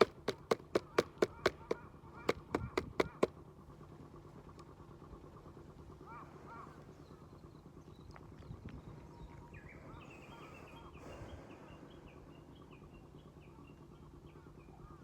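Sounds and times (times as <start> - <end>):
honking bird calls: 0.0 - 3.3
steady low drone: 3.3 - 14.8.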